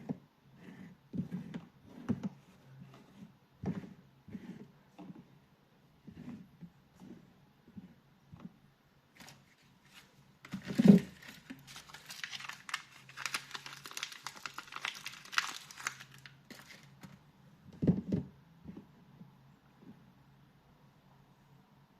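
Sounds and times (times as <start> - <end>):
soap wrapper crinkling and tearing: 10.5 - 17.0.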